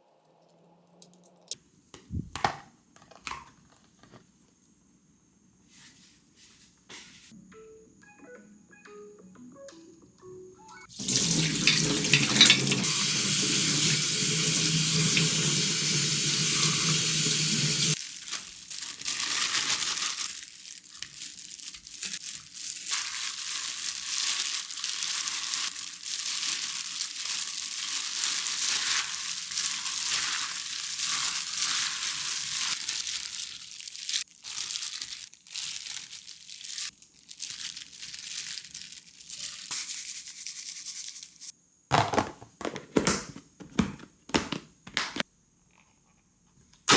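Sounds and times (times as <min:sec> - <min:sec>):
soft uneven hissing: 0:05.5 - 0:07.4
tap running into a sink: 0:11.0 - 0:13.0.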